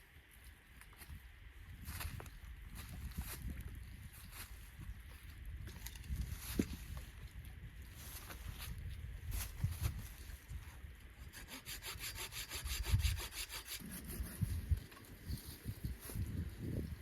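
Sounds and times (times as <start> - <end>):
hand saw cutting wood: 11.2 - 14.8.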